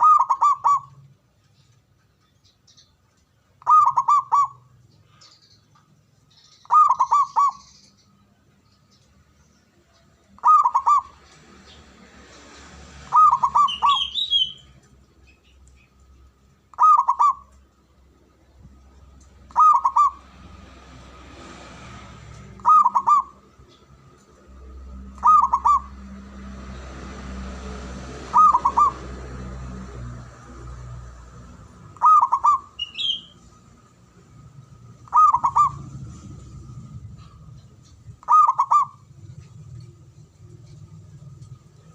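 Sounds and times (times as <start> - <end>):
dove cooing: 0.0 - 1.0, 3.6 - 4.7, 6.6 - 7.8, 10.4 - 11.2, 13.1 - 14.4, 16.7 - 17.5, 19.5 - 20.2, 22.5 - 23.4, 25.2 - 26.1, 28.2 - 29.1, 32.0 - 33.2, 35.0 - 36.3, 37.1 - 40.0.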